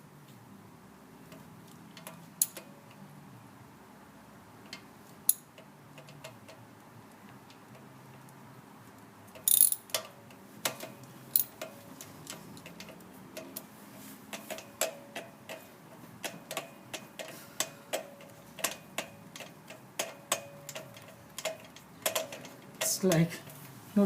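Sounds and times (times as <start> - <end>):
hand tools clicking on metal: 9.3 - 13.7, 16.2 - 23.6.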